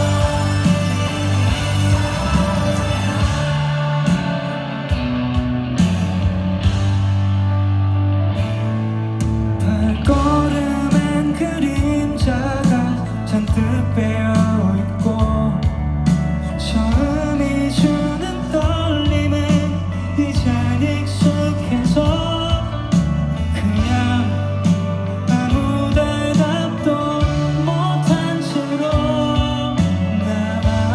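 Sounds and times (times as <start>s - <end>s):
sustained bass: 0.0s - 30.9s.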